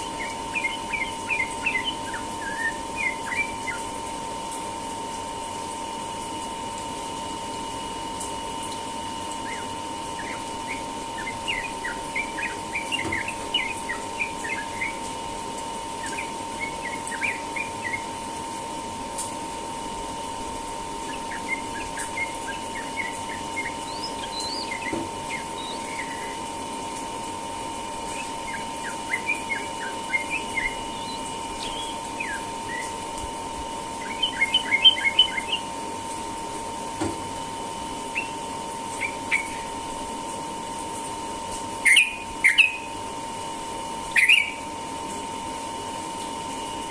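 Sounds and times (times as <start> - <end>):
bird chirping: 0.0 - 3.9, 9.4 - 15.1, 16.0 - 18.2, 21.0 - 26.5, 28.0 - 33.0, 33.9 - 35.7, 38.1 - 39.7, 41.8 - 42.9, 44.2 - 44.6
steady hum: 0.0 - 46.9.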